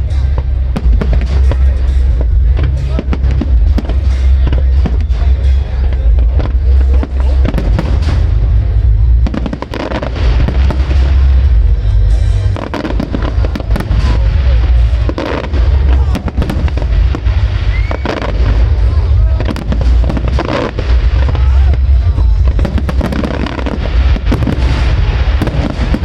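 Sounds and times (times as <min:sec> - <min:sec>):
fireworks bangs and crackles: 0:00.0 - 0:26.0
low rumble of shell bursts: 0:00.0 - 0:26.0
firework whistle: 0:09.2 - 0:26.0.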